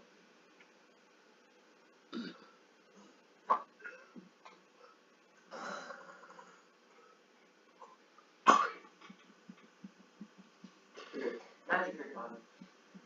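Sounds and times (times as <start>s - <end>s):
person's sharp throat sound: 2.1s - 2.5s, 5.5s - 6.6s.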